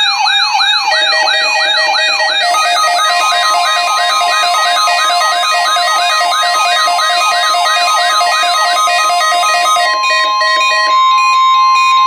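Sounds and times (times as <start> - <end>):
fast electronic warble: 2.4 - 9.9
held synthetic notes: 2.4 - 10.0
alarm tone: 2.4 - 10.1.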